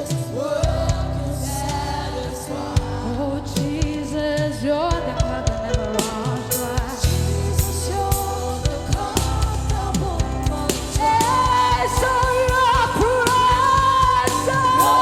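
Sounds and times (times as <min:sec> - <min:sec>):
band playing: 0:00.0 - 0:15.0
gospel singing with vocal runs: 0:00.0 - 0:15.0.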